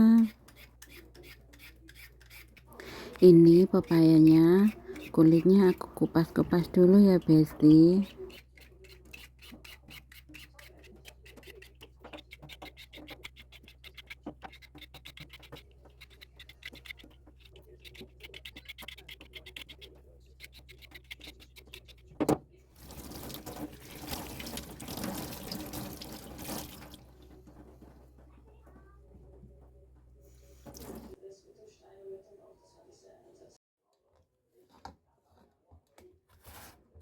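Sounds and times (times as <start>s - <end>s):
peeler scraping fruit skin: 0.0s - 5.9s, 7.5s - 22.1s
running tap water: 22.8s - 27.6s, 30.7s - 31.2s.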